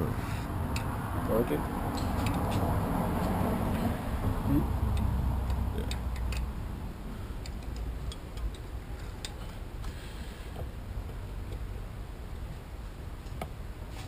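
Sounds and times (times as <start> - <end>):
low steady rumble: 0.0 - 13.9.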